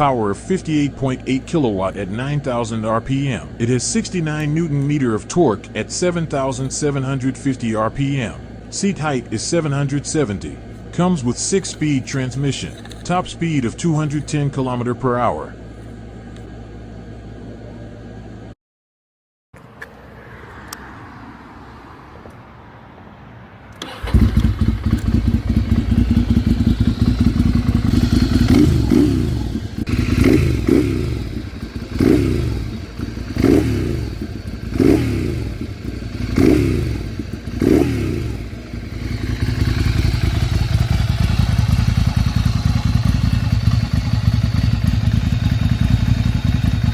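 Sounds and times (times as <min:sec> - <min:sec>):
motorcycle engine starting and idling: 0:00.0 - 0:14.5, 0:23.7 - 0:46.9
motorcycle engine revving: 0:23.8 - 0:46.9.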